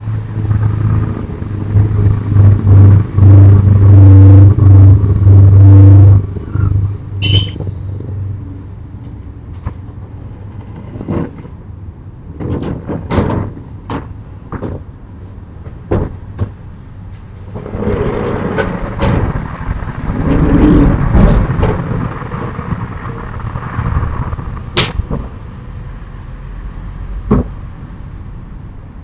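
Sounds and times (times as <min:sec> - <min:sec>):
truck engine rumbling: 0:00.0 - 0:29.0
short high squeal: 0:07.2 - 0:08.2
sharp knocks and clatters: 0:12.4 - 0:14.9, 0:15.6 - 0:16.6, 0:27.3 - 0:27.6.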